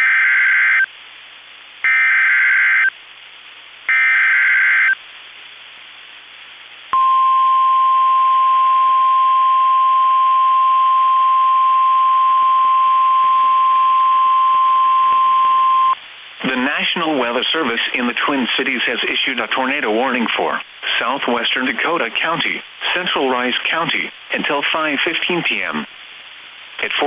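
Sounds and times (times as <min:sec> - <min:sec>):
steady warning alarm tone: 0:01.9 - 0:02.9, 0:03.9 - 0:05.0.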